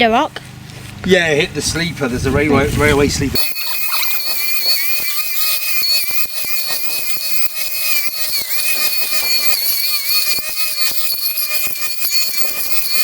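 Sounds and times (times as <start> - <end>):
strimmer motor whining: 2.2 - 13.0
blade cutting grass crackles: 3.4 - 13.0.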